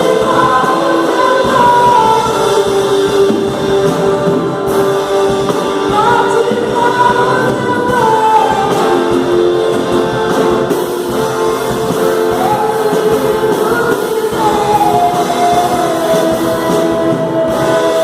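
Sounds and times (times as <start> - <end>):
person singing: 0.0 - 4.3, 5.8 - 18.0
guitar accompaniment: 0.0 - 18.0.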